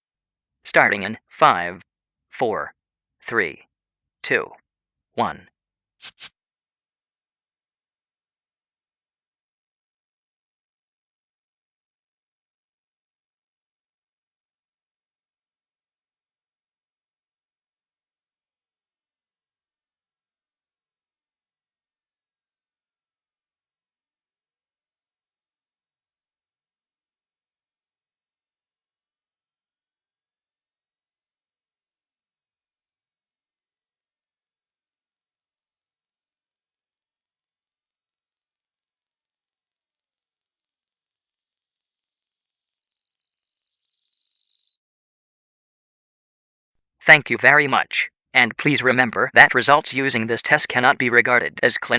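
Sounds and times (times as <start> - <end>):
sine test tone descending: 18.2 - 44.8.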